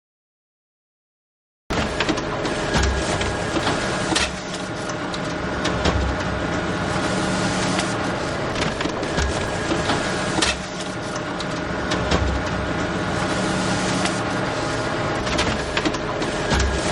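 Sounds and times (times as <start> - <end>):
machine clicks: 1.8 - 6.6, 7.6 - 13.0, 13.8 - 16.9
photocopier whirring: 1.8 - 16.9.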